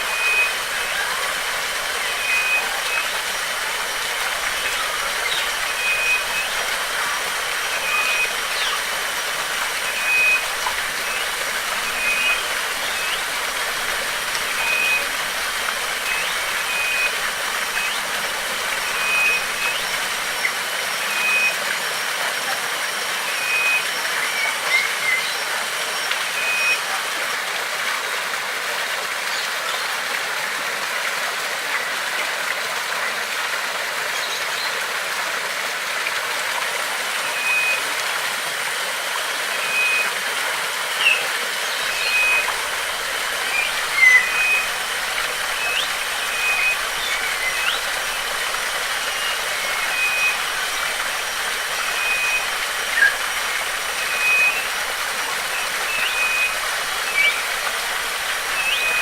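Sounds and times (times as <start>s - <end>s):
bird chirps: 0.0s - 21.6s, 40.9s - 59.0s
bird whistling: 0.0s - 21.7s, 23.3s - 25.4s, 26.2s - 26.8s, 37.2s - 37.9s, 39.5s - 40.2s, 40.9s - 59.0s
stream or waterfall rushing: 0.0s - 59.0s.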